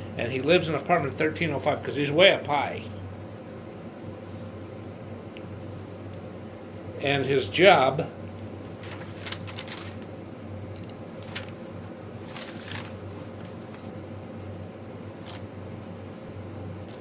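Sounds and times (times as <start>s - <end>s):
faint rustles: 8.6s - 10.1s, 11.1s - 14.0s.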